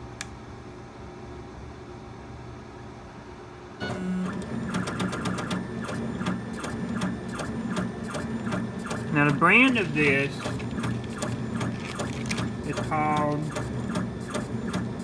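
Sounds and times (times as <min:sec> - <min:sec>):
stepper motors buzzing and clicking: 0:04.0 - 0:15.0.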